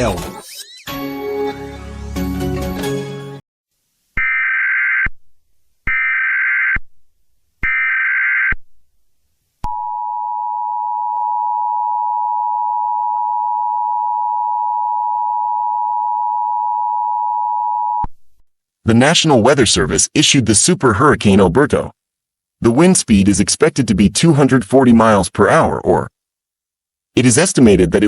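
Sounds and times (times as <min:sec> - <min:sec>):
warbling digital data bursts: 0:00.0 - 0:01.1.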